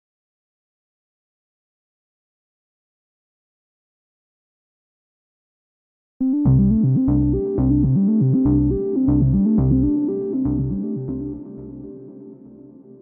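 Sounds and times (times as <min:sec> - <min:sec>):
synthesizer keyboard music: 0:06.2 - 0:13.0.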